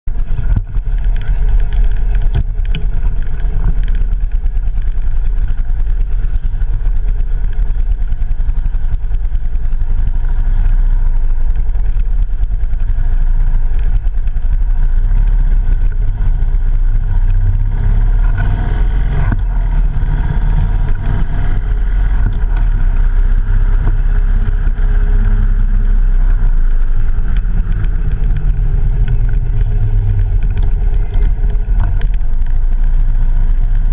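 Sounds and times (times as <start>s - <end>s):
motorcycle engine running: 0.0s - 33.9s
wind rumble on microphone: 0.1s - 33.9s.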